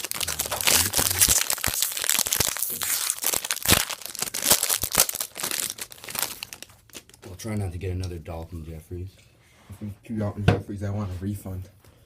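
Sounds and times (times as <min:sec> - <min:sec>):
plastic wrapper tearing and crinkling: 0:00.0 - 0:07.2.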